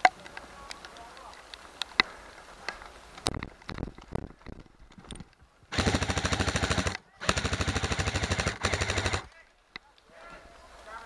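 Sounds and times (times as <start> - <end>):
airsoft rifle full-auto burst: 5.7 - 9.3.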